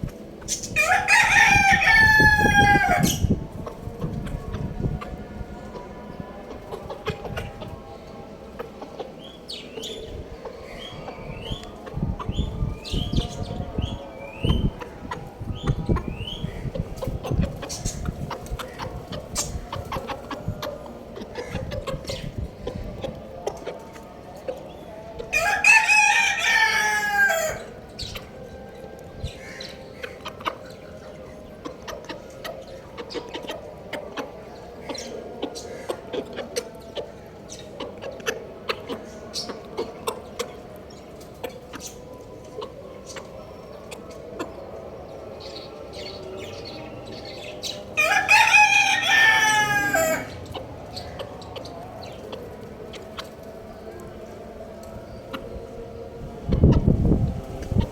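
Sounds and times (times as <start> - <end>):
rooster crowing: 0.8 - 3.3, 25.3 - 27.7, 48.0 - 50.5.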